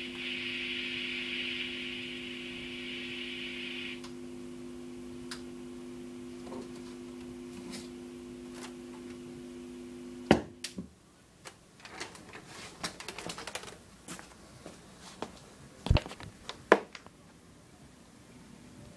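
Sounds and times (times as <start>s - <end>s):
steady low hum: 0.0s - 11.8s.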